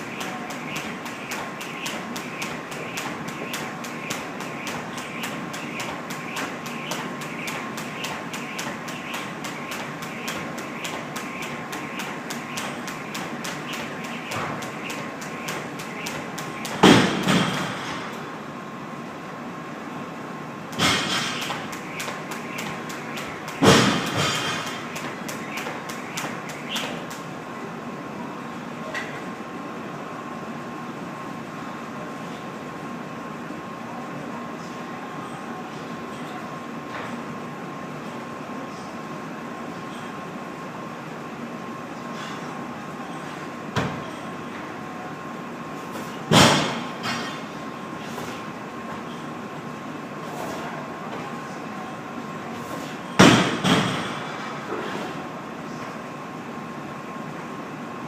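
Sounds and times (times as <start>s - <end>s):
jump rope slapping floor: 0.0s - 18.0s, 20.7s - 27.3s, 46.3s - 47.3s.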